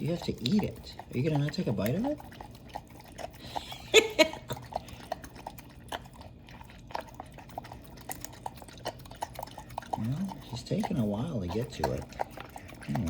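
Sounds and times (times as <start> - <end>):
dog lapping at a bowl: 0.0 - 13.0.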